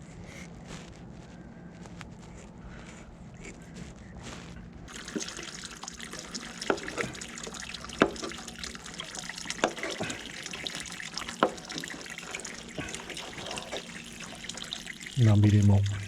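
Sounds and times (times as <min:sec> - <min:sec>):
water running and splashing: 0:04.9 - 0:16.0.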